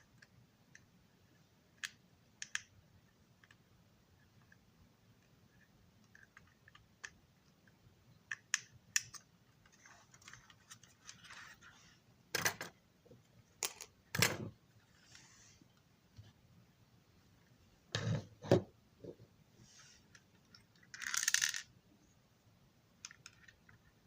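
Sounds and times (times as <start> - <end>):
soft rustle: 9.6 - 12.1, 14.7 - 16.4, 19.1 - 20.5.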